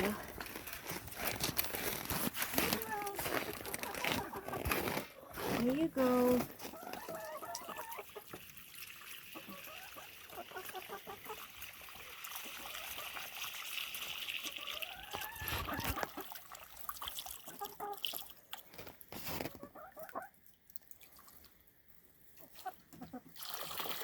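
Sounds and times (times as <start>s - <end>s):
water pouring into a bucket: 7.1s - 19.1s, 23.2s - 24.0s.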